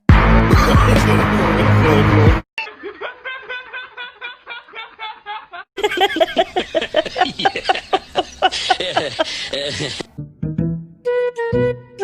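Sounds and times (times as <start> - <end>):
loud music: 0.1 - 2.4
person laughing: 2.6 - 10.1.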